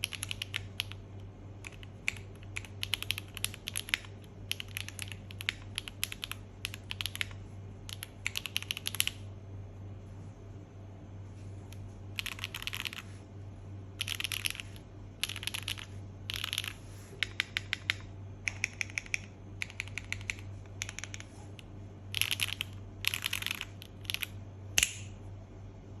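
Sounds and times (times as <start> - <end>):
mechanical keyboard typing: 0.0 - 9.2, 12.2 - 13.0, 14.0 - 24.9
steady low hum: 0.0 - 26.0.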